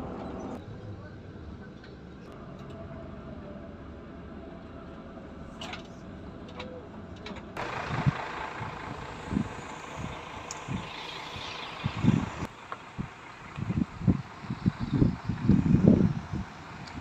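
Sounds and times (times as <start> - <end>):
wind buffeting microphone: 7.8 - 17.0.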